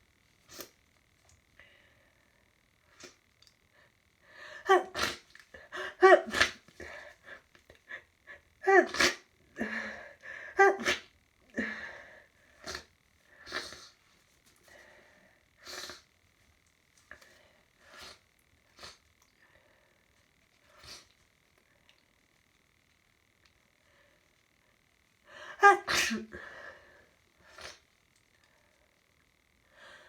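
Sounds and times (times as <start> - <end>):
person sneezing: 4.6 - 6.7, 8.6 - 9.8, 10.6 - 11.8, 25.4 - 26.6.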